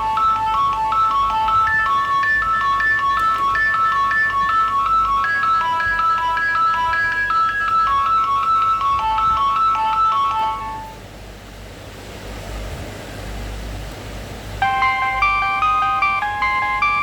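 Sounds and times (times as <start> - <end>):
phone ringtone melody: 0.0 - 11.0, 14.6 - 17.0.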